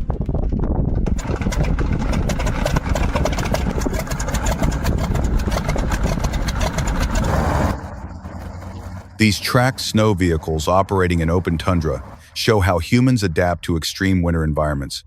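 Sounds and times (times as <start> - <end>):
fast dense clatter: 0.0 - 12.2
heavy vehicle engine running: 0.6 - 13.2.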